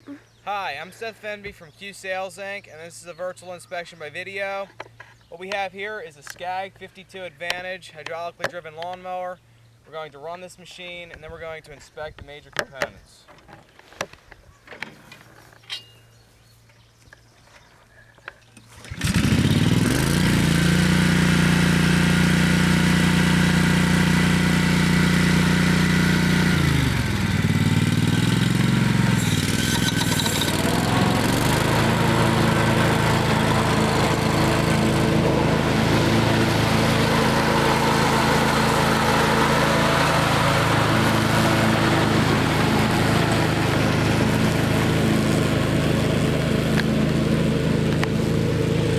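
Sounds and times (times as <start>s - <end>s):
mower engine running: 18.6s - 48.9s.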